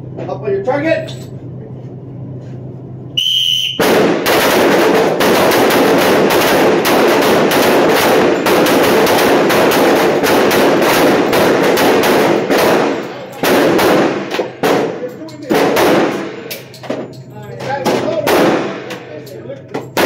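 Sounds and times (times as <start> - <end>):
whistle blast: 3.1 - 3.9
pistol shots echoing indoors: 3.2 - 17.2, 17.8 - 19.1, 19.8 - 20.0.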